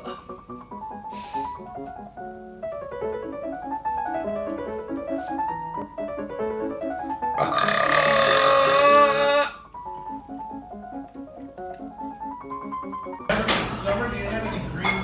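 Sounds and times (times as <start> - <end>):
piano music: 0.0 - 15.0
woman burping loudly: 7.4 - 9.6.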